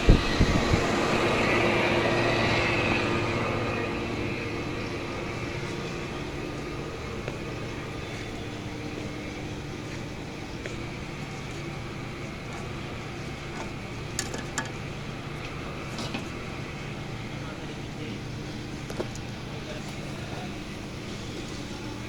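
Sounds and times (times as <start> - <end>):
machine humming and rushing: 0.0 - 7.8.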